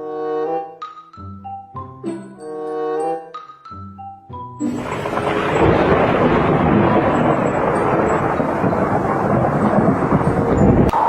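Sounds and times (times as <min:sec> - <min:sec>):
loud rumbling rush: 0:04.7 - 0:11.0.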